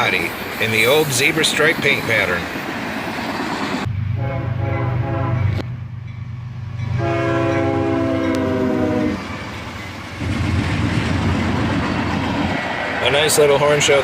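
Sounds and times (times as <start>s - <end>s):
diesel locomotives rumbling: 0.0s - 14.0s
locomotive air horn blasts: 4.2s - 5.6s, 7.0s - 9.2s.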